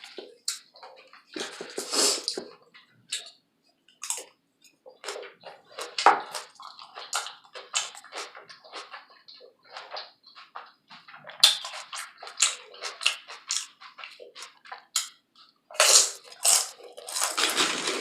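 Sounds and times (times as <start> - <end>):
chewing and wet mouth sounds: 0.0 - 18.0.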